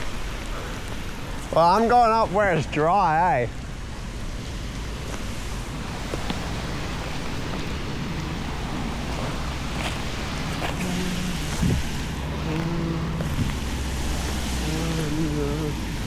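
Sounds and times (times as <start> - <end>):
rain: 0.0 - 16.0
wind on microphone: 5.3 - 16.0.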